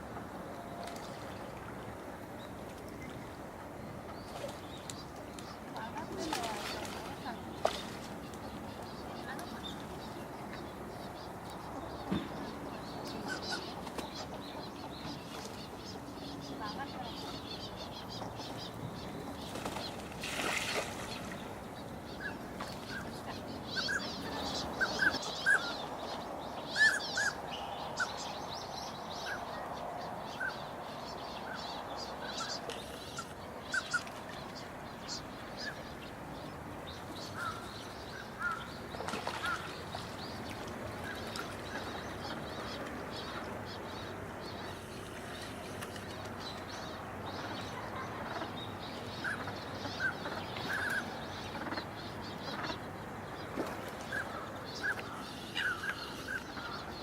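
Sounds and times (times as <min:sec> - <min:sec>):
flock of birds calling: 0:37.2 - 0:40.2.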